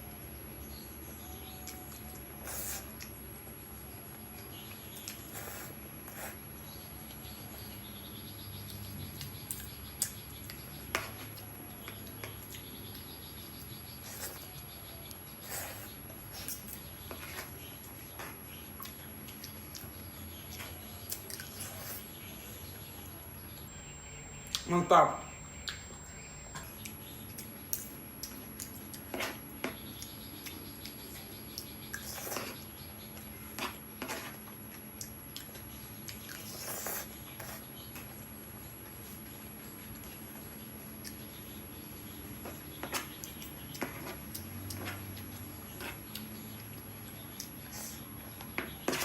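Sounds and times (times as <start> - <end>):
wet chewing and mouth smacking: 8.6 - 22.1, 26.8 - 41.6, 42.2 - 48.3.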